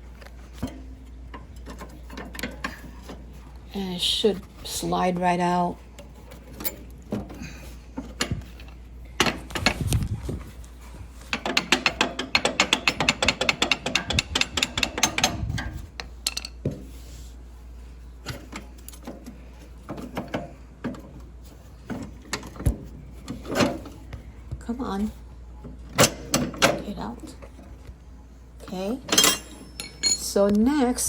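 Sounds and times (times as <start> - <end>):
metal clicking and knocking: 0.6 - 3.3, 8.0 - 9.9, 11.2 - 16.7.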